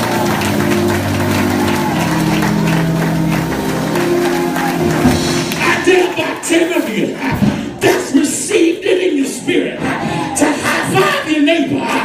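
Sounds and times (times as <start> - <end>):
sustained organ-like chords: 0.0 - 7.8.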